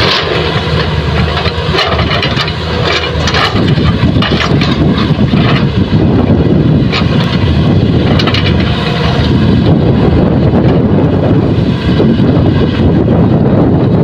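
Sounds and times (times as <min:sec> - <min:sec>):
metal clanks: 0:00.0 - 0:05.7, 0:08.0 - 0:09.2
diesel engine low rumble: 0:00.0 - 0:14.0.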